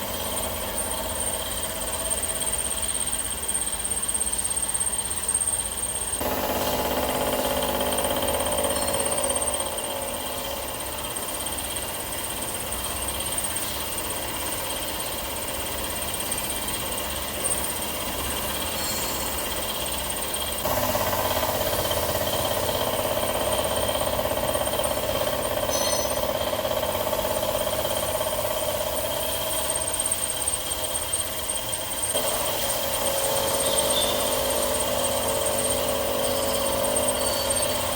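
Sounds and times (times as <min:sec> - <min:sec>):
milling machine cutting steel: 0:06.2 - 0:37.9.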